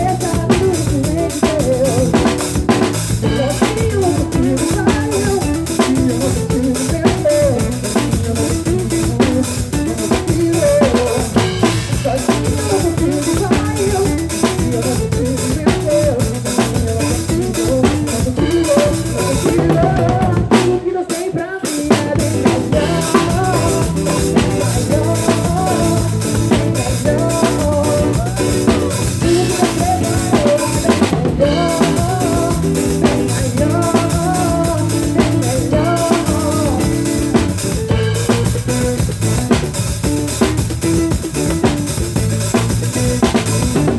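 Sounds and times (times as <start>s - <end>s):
band music: 0.0s - 43.9s
drum kit rhythm: 0.0s - 43.9s.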